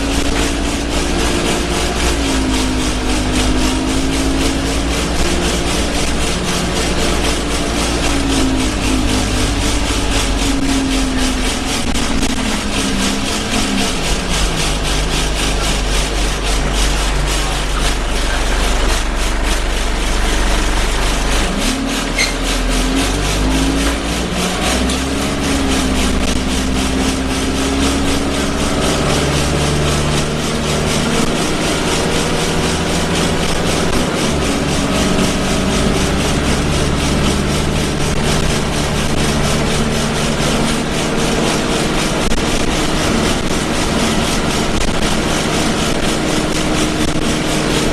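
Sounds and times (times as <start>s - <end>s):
bus diesel engine: 0.0s - 47.9s
bus vibration noise: 0.0s - 47.9s.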